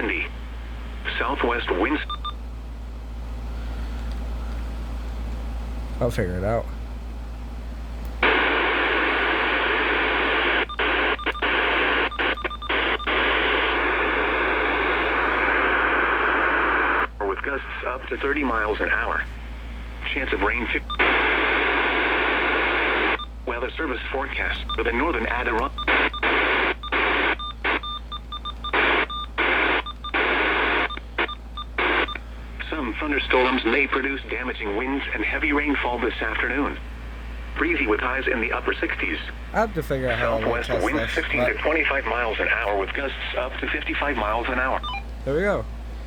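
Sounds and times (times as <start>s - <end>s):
scanner radio static hiss: 0.0s - 2.1s, 8.2s - 27.9s, 28.7s - 45.7s
radio static bursts: 37.5s - 45.6s
short beeps: 44.8s - 45.1s.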